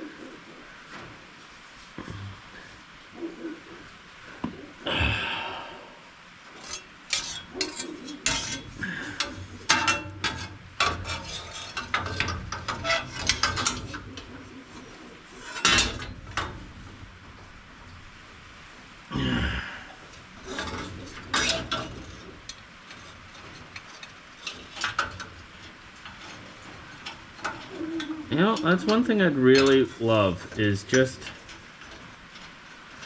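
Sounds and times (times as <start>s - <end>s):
metal tools clinking: 6.6s - 14.0s, 27.0s - 32.0s.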